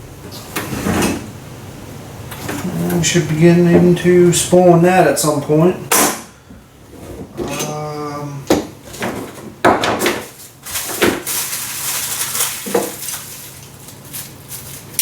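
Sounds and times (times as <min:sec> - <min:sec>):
packaging rustling and clattering: 0:08.9 - 0:15.0.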